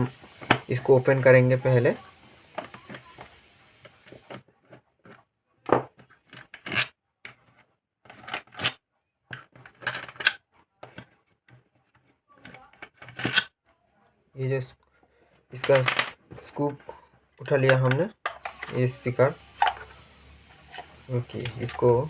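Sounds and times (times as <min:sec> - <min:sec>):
small hard parts clicking and clinking: 0:00.0 - 0:04.4, 0:18.3 - 0:22.0.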